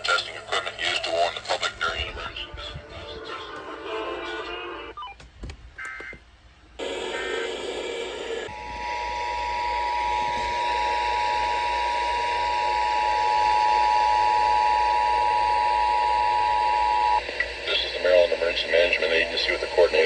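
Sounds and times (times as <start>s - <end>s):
radio hiss: 0.0s - 4.9s, 6.8s - 20.0s
data header bursts: 9.3s - 20.0s.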